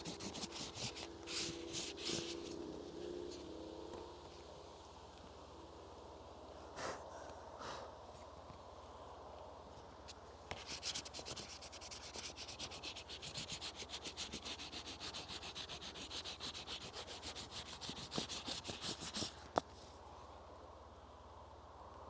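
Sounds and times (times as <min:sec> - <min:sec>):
rubbing tool over paper on bark: 0:00.0 - 0:03.4, 0:10.5 - 0:19.9.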